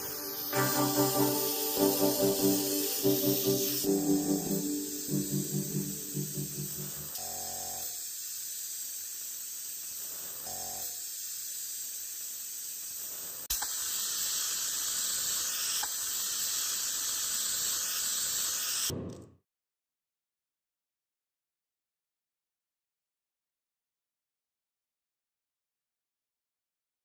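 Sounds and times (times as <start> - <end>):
spraying hiss: 0.0 - 18.9
sharp click: 13.5 - 13.8.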